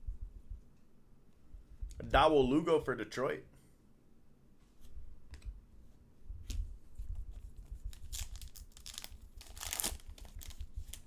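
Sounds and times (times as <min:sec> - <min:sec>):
foil wrapper crinkling and tearing: 0:07.9 - 0:11.0.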